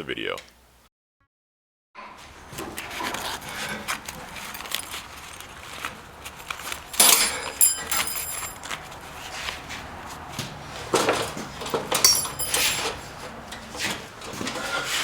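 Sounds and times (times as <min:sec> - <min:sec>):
metal pieces clinking: 0:04.5 - 0:05.4, 0:06.2 - 0:08.6, 0:12.0 - 0:13.0
loud ringing metallic clank: 0:07.0 - 0:08.6, 0:12.0 - 0:13.1.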